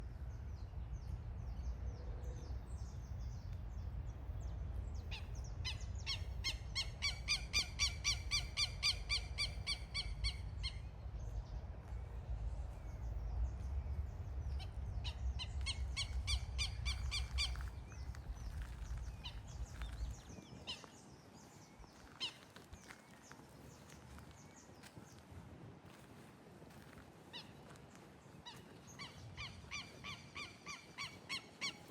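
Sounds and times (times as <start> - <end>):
low rumble: 0.0 - 20.7.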